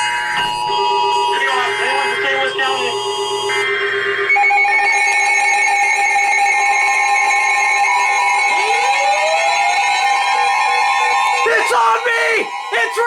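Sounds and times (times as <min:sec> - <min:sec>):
steady alarm tone: 0:00.0 - 0:13.0
tone sweeping upward in pitch: 0:05.9 - 0:11.4.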